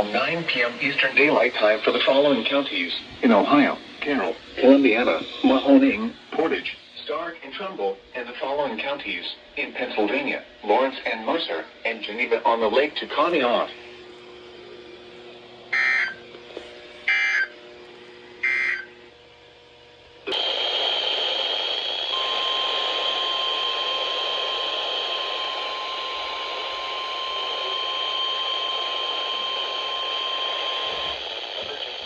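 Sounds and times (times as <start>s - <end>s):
radio static hiss: 0.0s - 13.9s, 20.3s - 32.0s
steady warning alarm tone: 15.7s - 16.2s, 17.1s - 17.5s, 18.4s - 18.9s, 20.3s - 32.0s
harsh data buzzes: 18.4s - 19.0s, 20.3s - 32.0s.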